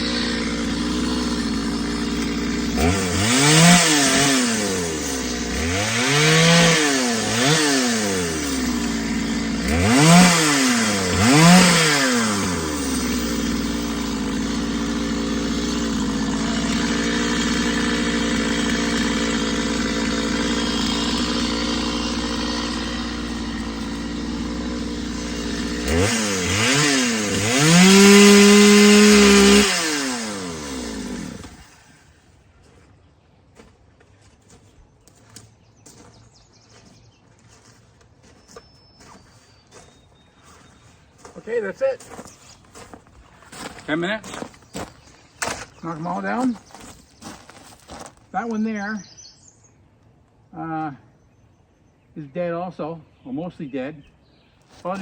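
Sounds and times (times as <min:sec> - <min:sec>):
chainsaw engine revving and idling: 0:00.0 - 0:32.2, 0:43.0 - 0:48.9, 0:54.8 - 0:55.0.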